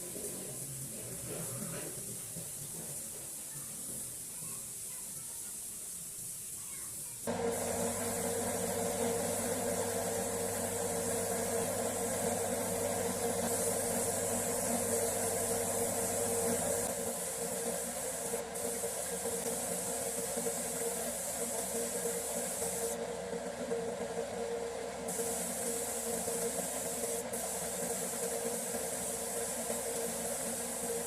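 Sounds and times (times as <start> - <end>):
machine hiss: 0.0 - 31.0
workshop machine humming: 7.2 - 31.0.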